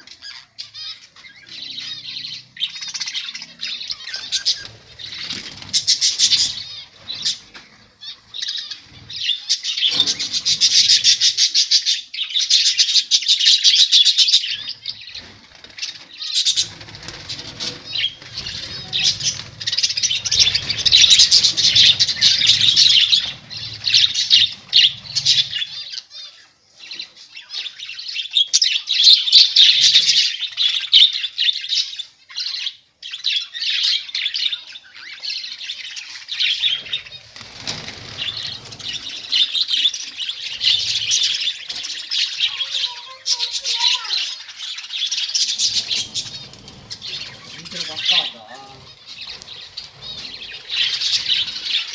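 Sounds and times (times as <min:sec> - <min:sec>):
budgerigars chattering and chirping: 0:00.0 - 0:51.9
wings flapping: 0:04.1 - 0:07.7, 0:14.8 - 0:25.8, 0:36.6 - 0:44.2, 0:45.1 - 0:51.9.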